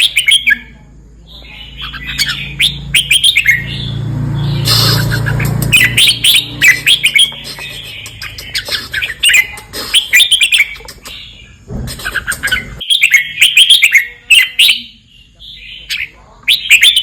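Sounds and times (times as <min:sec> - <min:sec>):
bird singing whistled notes: 0:01.3 - 0:11.4.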